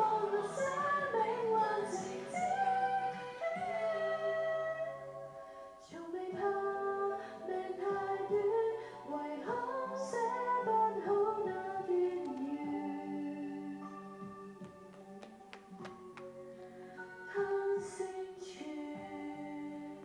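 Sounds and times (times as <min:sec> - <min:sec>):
woman singing: 0:00.0 - 0:05.0, 0:05.8 - 0:14.0, 0:17.2 - 0:20.0
instrumental accompaniment: 0:10.4 - 0:20.0.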